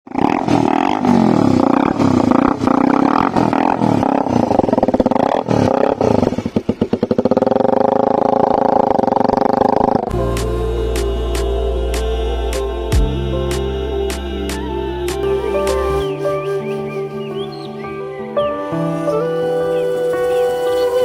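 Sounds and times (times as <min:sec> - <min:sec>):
motorcycle engine revving: 0:00.1 - 0:16.6.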